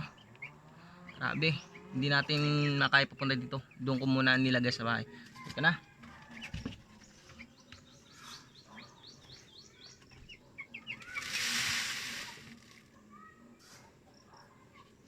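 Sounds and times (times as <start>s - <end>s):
chicks peeping: 0.0s - 15.0s
hissing rush of noise: 11.0s - 12.8s.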